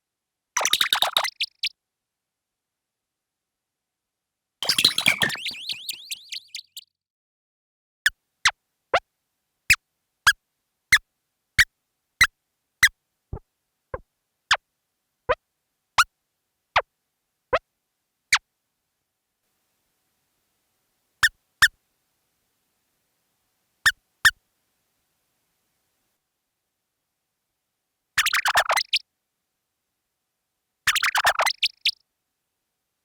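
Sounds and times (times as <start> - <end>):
cartoon footstep chirps: 4.6 - 6.7.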